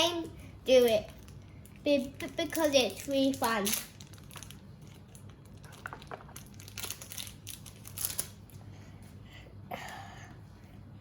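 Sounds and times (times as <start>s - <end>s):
trading cards crinkling and rustling: 0.8s - 8.6s.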